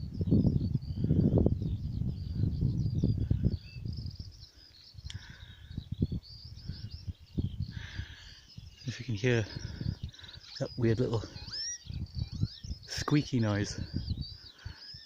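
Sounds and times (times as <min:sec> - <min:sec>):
wind rumble on microphone: 0:00.0 - 0:15.0
lapwing squeaky calls: 0:06.6 - 0:15.0.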